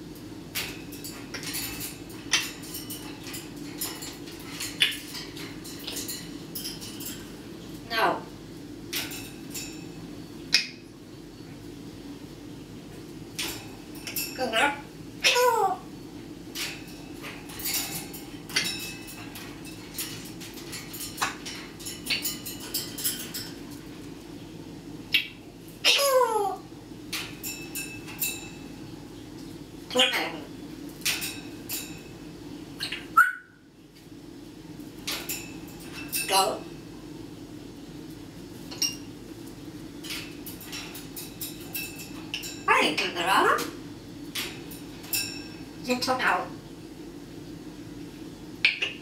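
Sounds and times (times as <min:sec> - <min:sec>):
parrot clicks and chirps: 0:25.1 - 0:25.4.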